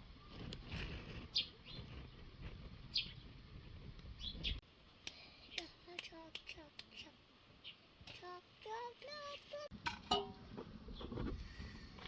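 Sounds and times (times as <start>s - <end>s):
small birds chirping: 0.2s - 9.7s.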